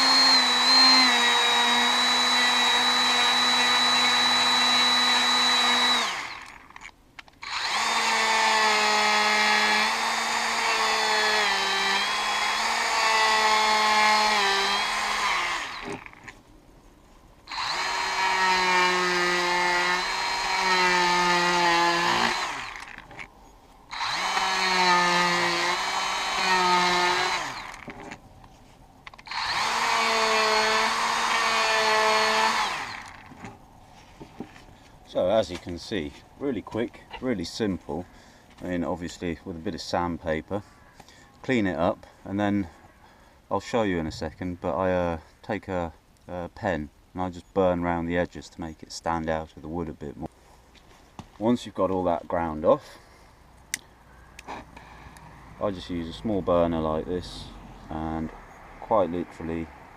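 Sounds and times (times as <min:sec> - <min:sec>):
die grinder whining into wood: 0:00.0 - 0:16.4, 0:17.5 - 0:23.3, 0:23.9 - 0:28.2, 0:29.1 - 0:33.6.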